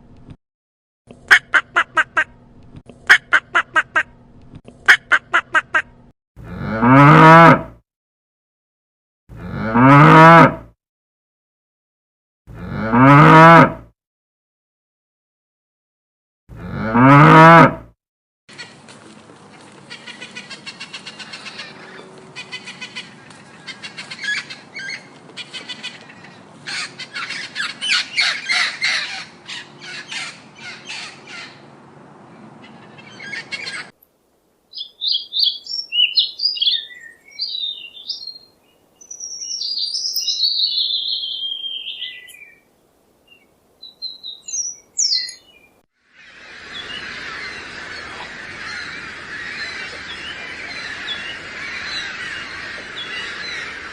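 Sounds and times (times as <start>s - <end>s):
harsh repeated bird calls: 19.8s - 31.8s, 32.6s - 34.0s, 34.7s - 42.7s, 43.8s - 53.9s
high bird chirps and squeaks: 39.1s - 42.5s, 44.0s - 45.5s.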